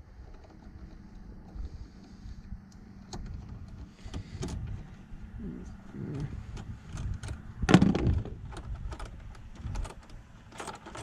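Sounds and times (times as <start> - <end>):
plastic parts clicking and knocking: 6.6 - 11.0.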